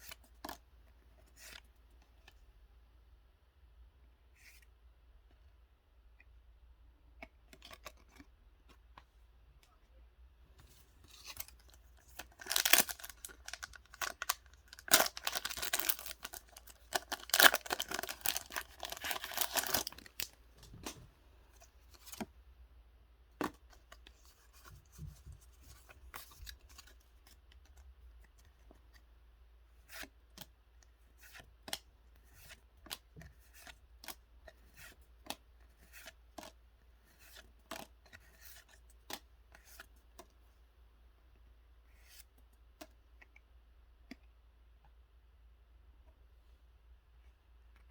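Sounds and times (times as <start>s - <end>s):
packaging being torn: 12.1s - 20.4s.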